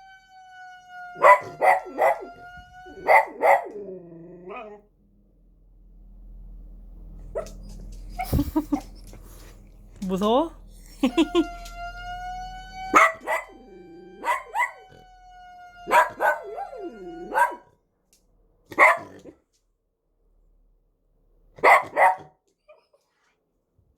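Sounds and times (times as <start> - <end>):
electronic siren tone: 0.0 - 4.8, 10.0 - 17.7
dog howling: 0.0 - 4.9, 10.8 - 17.7
dog barking: 1.2 - 3.9, 7.3 - 8.9, 12.9 - 13.6, 14.2 - 15.0, 15.9 - 17.7, 18.7 - 19.4, 21.6 - 22.4.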